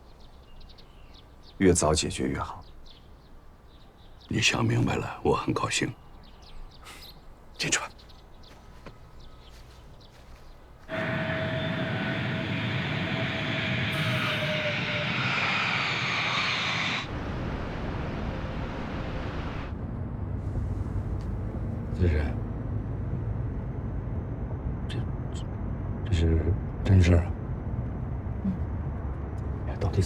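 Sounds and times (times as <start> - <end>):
rushing engine noise: 10.9 - 26.7.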